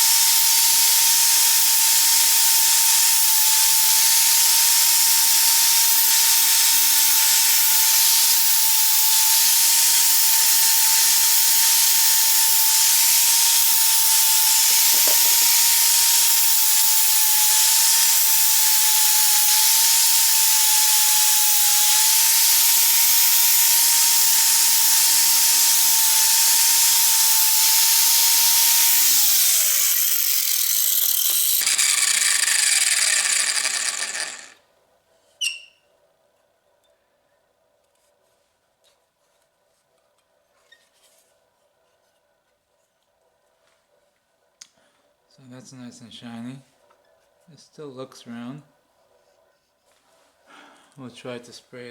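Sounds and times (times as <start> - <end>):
tool scouring rust hiss: 0.0 - 34.6
power tool motor whine: 11.0 - 34.6.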